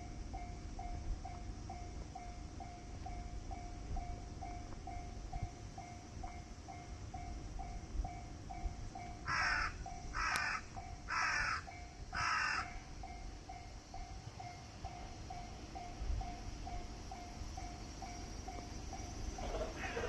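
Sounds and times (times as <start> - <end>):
level-crossing warning bell ringing: 0.0 - 20.0
crow cawing: 9.2 - 12.8.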